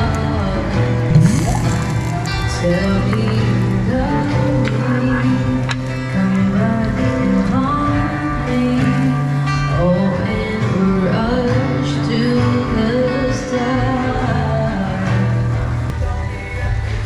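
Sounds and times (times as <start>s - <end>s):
guitar: 0.0s - 17.0s
steady bass notes: 1.1s - 4.7s.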